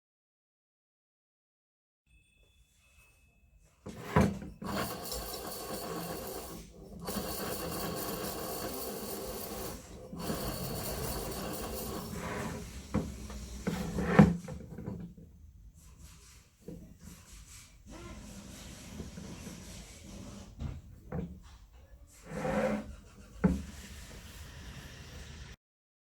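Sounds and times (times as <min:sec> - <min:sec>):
compressor grinding: 0:03.9 - 0:15.4.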